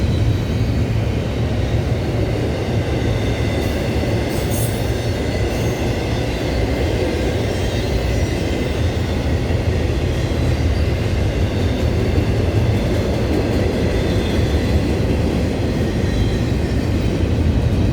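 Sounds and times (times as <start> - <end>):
freight train wheels rumbling on rail: 0.0 - 17.9.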